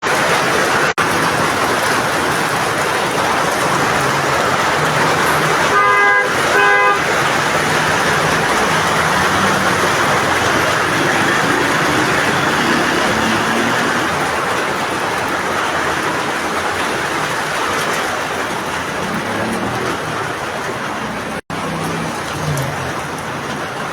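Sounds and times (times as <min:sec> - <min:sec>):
loud wash of noise: 0:00.0 - 0:23.4
car horn toots: 0:05.0 - 0:10.2.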